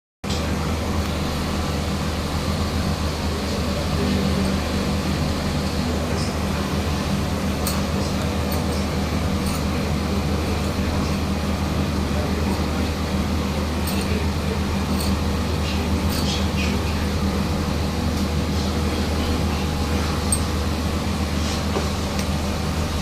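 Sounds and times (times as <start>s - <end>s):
air conditioner fan noise: 0.2s - 23.0s
air conditioner hum: 0.2s - 23.0s.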